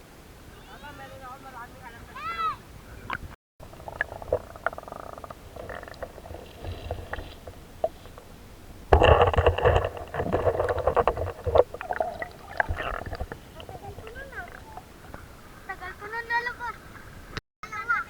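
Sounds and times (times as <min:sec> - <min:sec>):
water splashing in a river: 0:03.6 - 0:15.4.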